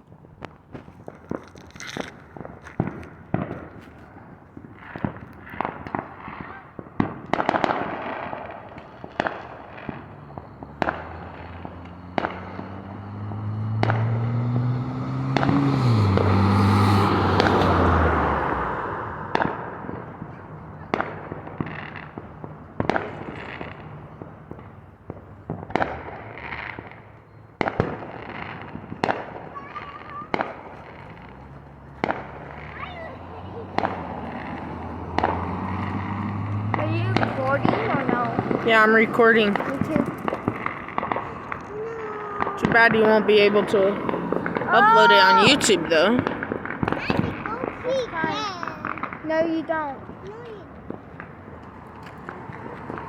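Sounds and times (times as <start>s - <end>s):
fireworks bangs and pops: 0.0s - 53.0s.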